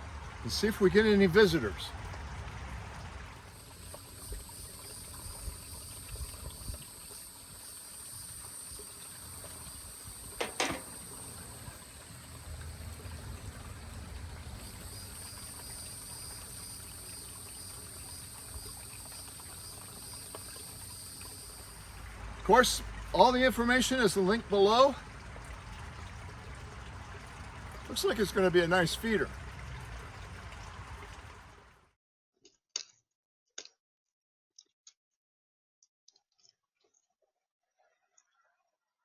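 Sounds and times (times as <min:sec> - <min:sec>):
insects droning: 0:00.0 - 0:01.9, 0:03.4 - 0:31.5.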